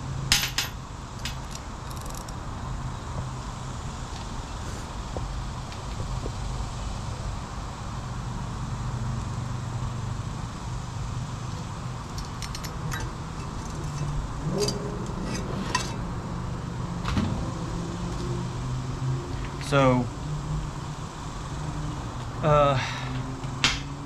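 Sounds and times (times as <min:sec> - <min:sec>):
steady low hum: 0:00.0 - 0:24.0
metal parts clinking and knocking: 0:00.3 - 0:02.4, 0:12.0 - 0:16.1
short metallic rings: 0:12.0 - 0:20.0.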